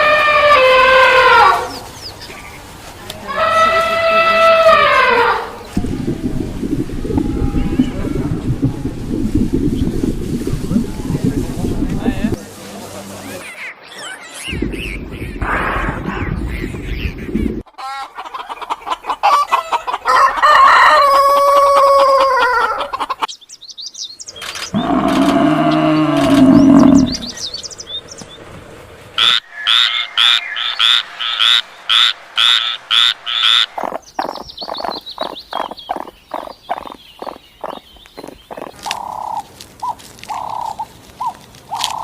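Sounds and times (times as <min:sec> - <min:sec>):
low animal calls: 0:03.3 - 0:11.5, 0:24.7 - 0:27.4
rooster crowing: 0:20.0 - 0:22.9.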